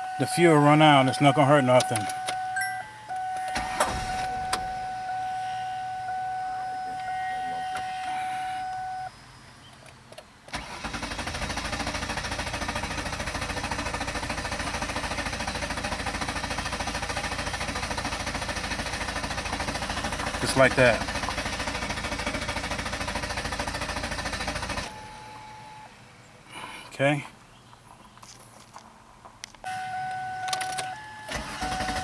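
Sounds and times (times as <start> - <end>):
starter cranking engine: 0.0 - 4.9, 10.5 - 25.2, 30.5 - 32.0
car warning chime: 0.0 - 9.8, 24.7 - 26.0, 29.6 - 32.0.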